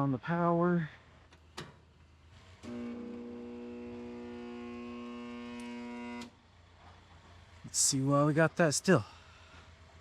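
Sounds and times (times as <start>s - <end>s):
motor electrical hum: 2.0s - 6.6s.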